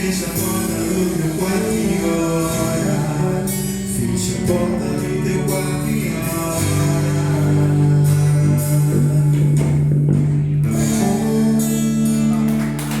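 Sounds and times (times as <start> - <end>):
instrumental worship music with guitar: 0.0 - 13.0.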